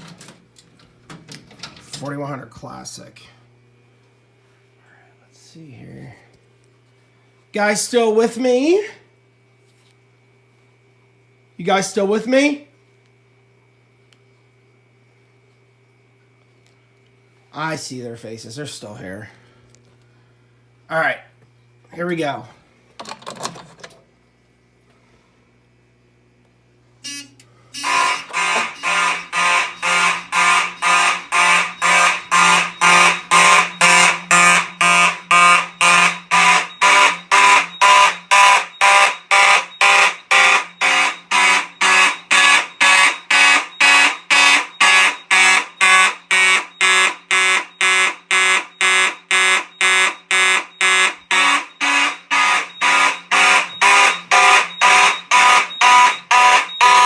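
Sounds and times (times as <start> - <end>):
fire alarm horns pulsing: 27.0 - 57.0.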